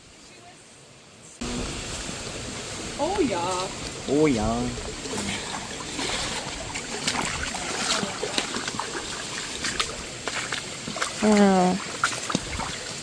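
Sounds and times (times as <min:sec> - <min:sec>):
water trickling: 0:02.2 - 0:13.0.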